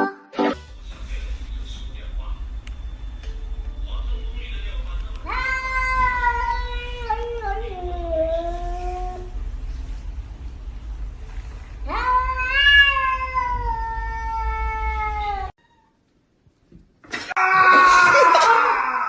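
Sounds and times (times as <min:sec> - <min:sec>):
cat yowling: 0:05.2 - 0:09.4, 0:11.8 - 0:16.0, 0:17.3 - 0:19.0.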